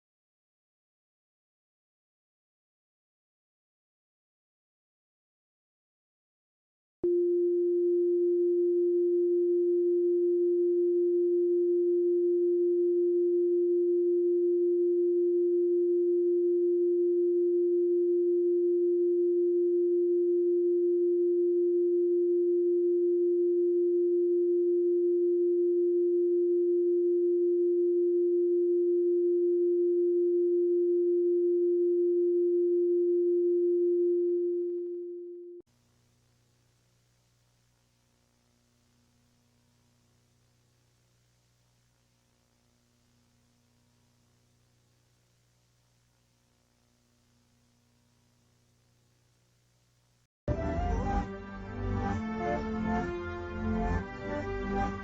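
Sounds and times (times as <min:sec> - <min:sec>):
low electronic sine tone: 0:07.0 - 0:35.6.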